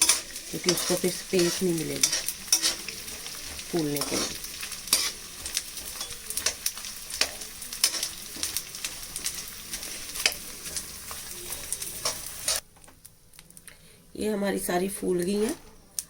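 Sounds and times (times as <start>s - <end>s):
frying sizzle with pops: 0.0s - 16.0s.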